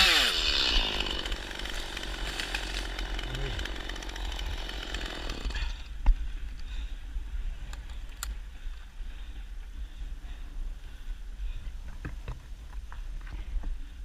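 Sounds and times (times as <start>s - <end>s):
chainsaw running: 0.0s - 5.9s.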